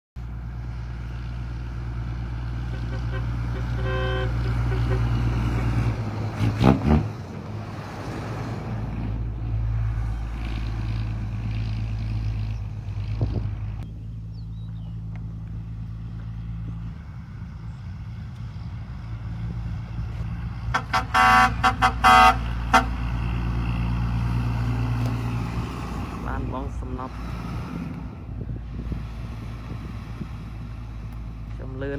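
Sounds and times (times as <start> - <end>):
engine humming: 0.2 - 31.9
vehicle horn toots: 2.7 - 5.7, 20.7 - 23.0.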